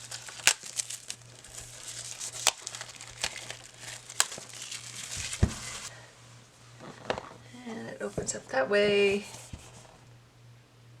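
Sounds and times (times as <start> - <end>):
sharp snaps and crackles: 0.0 - 5.8
packaging crinkling and tearing: 0.0 - 5.9.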